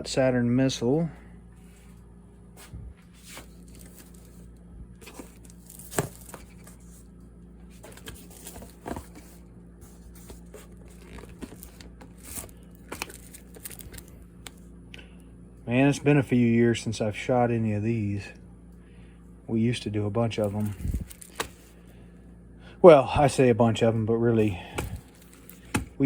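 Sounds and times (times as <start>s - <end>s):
steady low hum: 0.0s - 26.0s
cardboard rustling: 2.6s - 14.6s, 20.3s - 21.8s, 24.4s - 26.0s.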